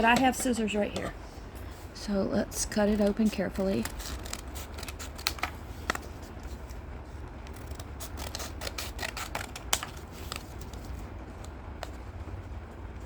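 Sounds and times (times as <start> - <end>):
scissors cutting plastic packaging: 2.8 - 6.0, 7.5 - 10.9.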